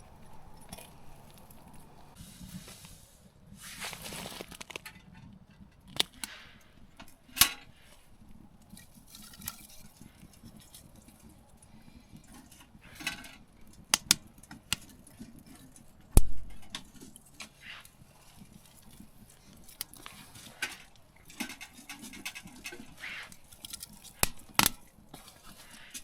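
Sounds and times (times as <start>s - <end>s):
brief rustling: 3.6s - 4.9s
small hard objects clinking: 3.9s - 6.2s.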